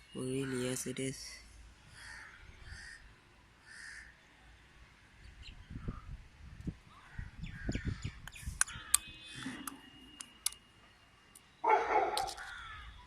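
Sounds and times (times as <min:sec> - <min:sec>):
sharp clicks: 0:08.2 - 0:10.6.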